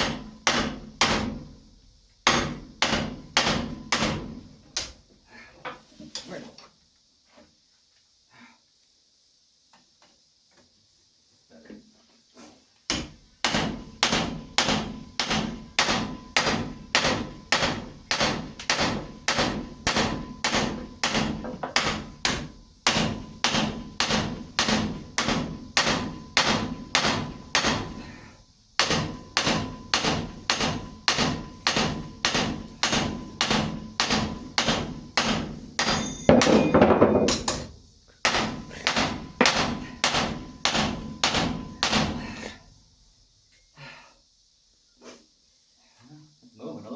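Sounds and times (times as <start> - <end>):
hammer striking steel on anvil: 0.0 - 1.5, 2.2 - 4.9, 12.9 - 28.2, 28.8 - 42.2.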